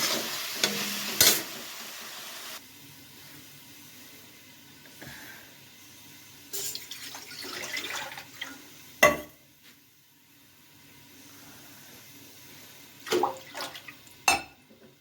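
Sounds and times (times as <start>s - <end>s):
water running from a tap: 6.5s - 8.8s, 12.9s - 14.2s.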